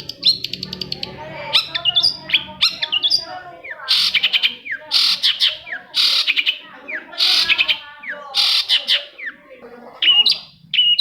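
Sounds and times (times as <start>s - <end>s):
shrike singing: 0.0s - 11.0s.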